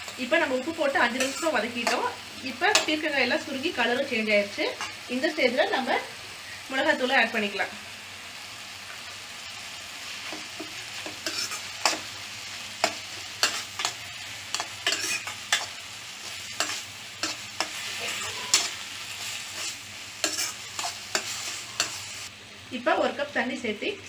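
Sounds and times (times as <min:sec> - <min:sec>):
vegetables sizzling in oil: 0:00.0 - 0:24.0
spatula scraping and knocking pan: 0:12.8 - 0:18.8, 0:19.5 - 0:22.0.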